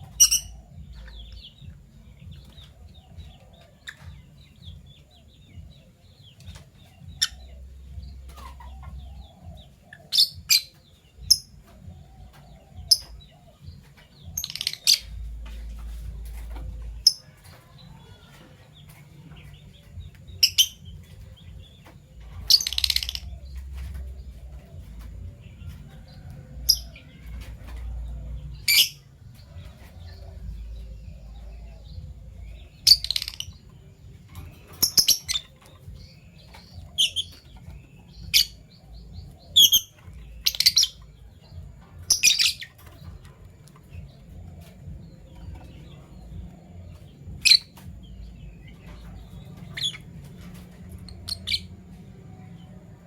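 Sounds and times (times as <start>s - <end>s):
lovebirds chirping: 0.0s - 53.0s
low steady hum: 0.0s - 53.0s.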